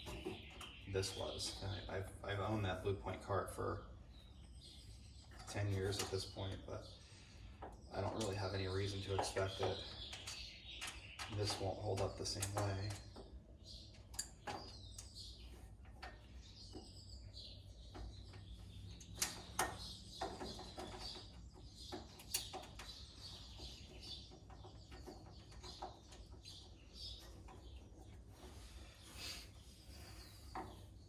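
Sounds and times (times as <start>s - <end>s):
faint birds chirping: 0.0s - 31.0s
sharp clicks and knocks: 7.6s - 17.0s, 17.9s - 28.6s.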